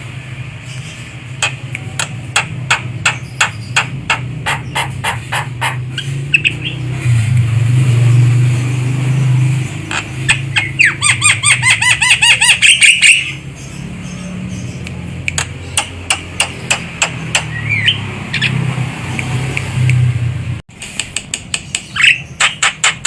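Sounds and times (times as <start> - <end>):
bird calling with sharp clicks: 1.4 - 6.8, 14.7 - 18.5, 21.0 - 23.0.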